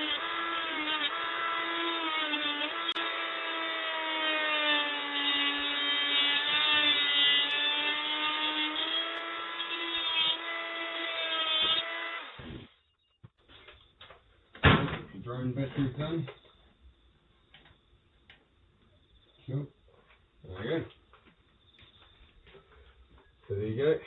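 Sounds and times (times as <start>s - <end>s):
oscillating multi-tool whine: 0.0s - 13.2s.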